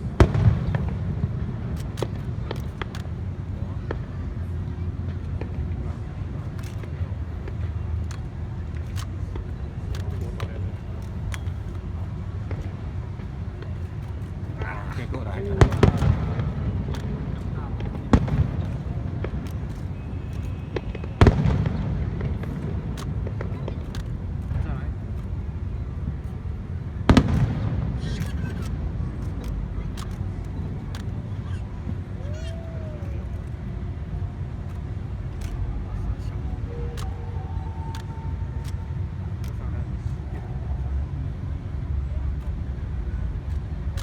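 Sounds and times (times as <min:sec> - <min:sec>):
sharp cracks: 0:00.0 - 0:04.1, 0:06.4 - 0:39.7
fireworks bangs and pops: 0:00.0 - 0:04.2, 0:05.3 - 0:31.6
steady low rumble: 0:00.0 - 0:44.0.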